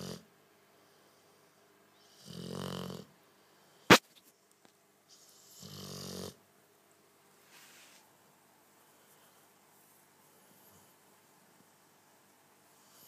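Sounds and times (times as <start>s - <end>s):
dog snoring: 0.0s - 0.2s, 2.0s - 3.2s, 5.1s - 6.4s.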